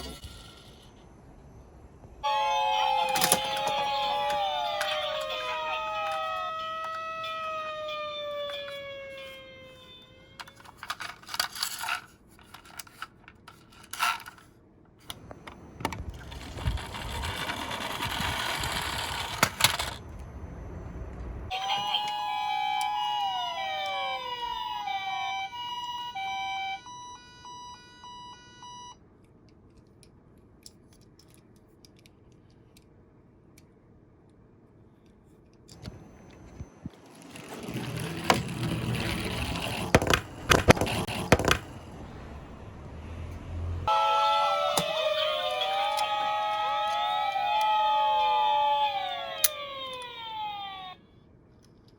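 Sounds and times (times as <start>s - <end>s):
toy electronic sirens: 2.2s - 11.2s, 15.1s - 29.0s, 35.7s - 41.9s, 43.8s - 51.3s
toy cars clicking and knocking: 3.1s - 7.5s, 10.4s - 20.1s, 29.6s - 32.9s, 37.1s - 41.8s.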